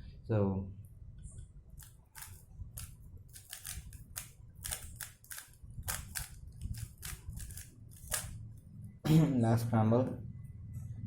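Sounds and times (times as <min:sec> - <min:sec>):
speed cube plastic clicks: 0:01.8 - 0:08.3.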